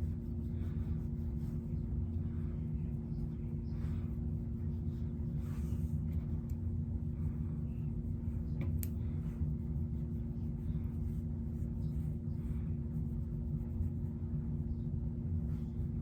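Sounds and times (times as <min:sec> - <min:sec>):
steady low hum: 0:00.0 - 0:16.0
faint small clicks: 0:08.6 - 0:09.0.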